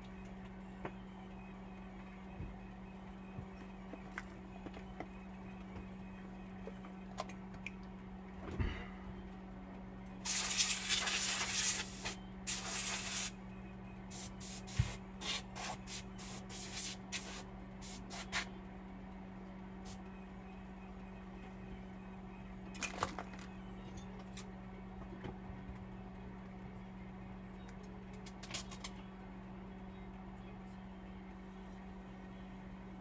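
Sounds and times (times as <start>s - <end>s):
steady low hum: 0.0s - 33.0s
spray hissing bursts: 10.2s - 13.3s.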